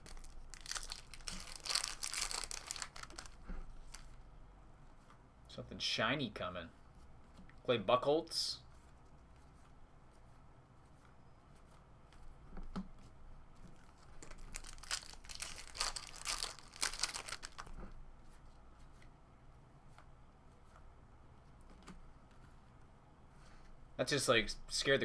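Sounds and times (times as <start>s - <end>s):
foil wrapper tearing and crinkling: 0.0s - 4.1s, 14.2s - 17.8s
small handling sound: 0.0s - 5.2s, 8.6s - 19.2s.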